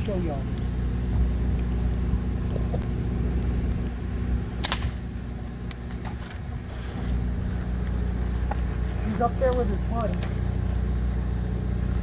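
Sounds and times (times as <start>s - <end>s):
vehicle engine idling: 0.0s - 12.0s
sharp clicks: 1.5s - 2.0s.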